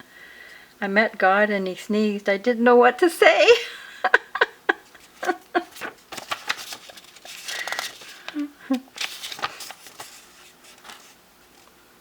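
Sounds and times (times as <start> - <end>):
person laughing softly: 3.7 - 5.9, 8.3 - 8.9
rustling: 5.0 - 11.8.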